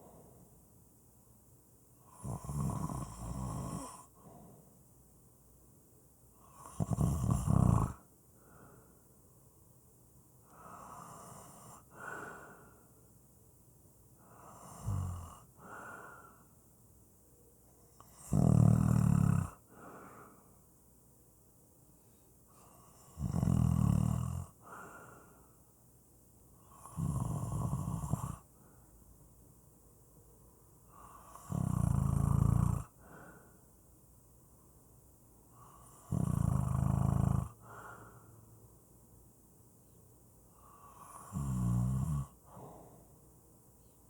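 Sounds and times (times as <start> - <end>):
soft breaths: 0.0 - 7.2, 7.8 - 18.3, 19.6 - 23.2, 24.5 - 36.7, 37.5 - 44.0
person snoring: 2.0 - 4.4, 6.4 - 8.9, 14.2 - 16.4, 18.0 - 20.3, 22.6 - 25.3, 26.6 - 28.5, 30.9 - 33.5, 35.6 - 38.2, 40.6 - 43.1.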